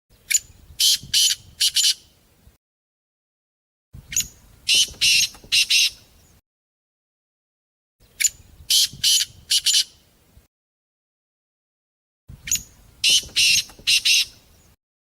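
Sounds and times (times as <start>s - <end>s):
partridge calling: 0.3s - 2.0s, 4.1s - 6.1s, 8.2s - 10.0s, 12.5s - 14.5s.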